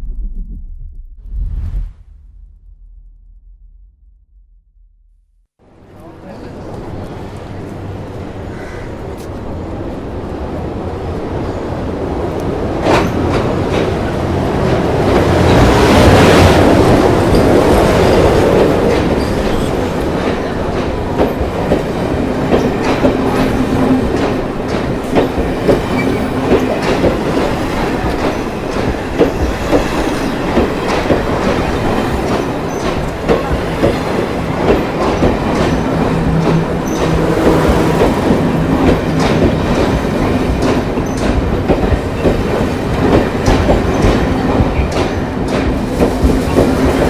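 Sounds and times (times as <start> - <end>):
train rushing into station: 5.6 - 47.0
wheels clacking over rail joints: 12.8 - 47.0.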